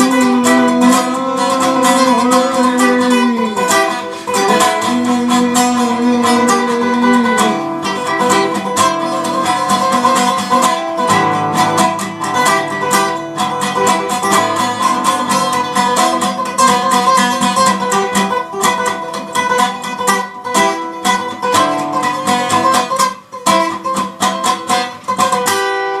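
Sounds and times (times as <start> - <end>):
quickly picked guitar notes: 0.0 - 16.8.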